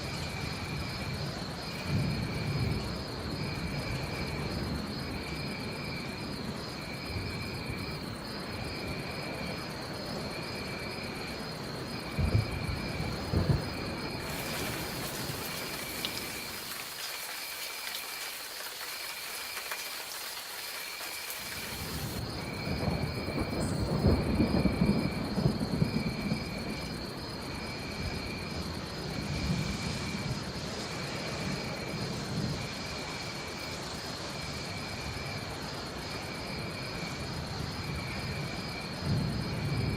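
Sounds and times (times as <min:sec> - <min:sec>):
steady rain: 0:00.0 - 0:39.9
thunder rumbling: 0:01.8 - 0:04.8, 0:12.1 - 0:32.9
thunder cracks: 0:12.2 - 0:17.1, 0:21.4 - 0:26.8.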